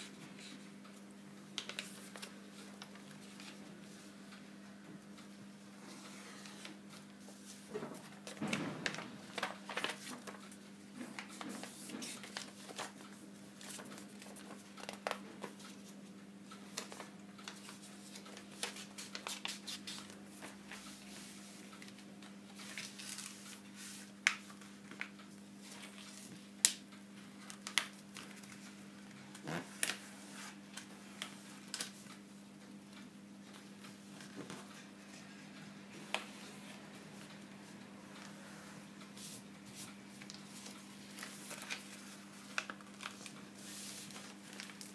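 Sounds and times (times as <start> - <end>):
paper folding and rustling: 1.6 - 4.1, 6.4 - 15.9, 16.7 - 26.8, 27.4 - 32.2, 39.2 - 44.9.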